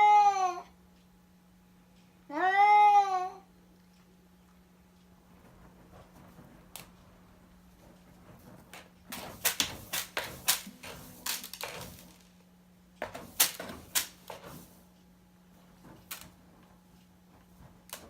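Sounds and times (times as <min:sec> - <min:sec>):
cat scratching litter: 0:07.7 - 0:12.4, 0:13.0 - 0:14.9.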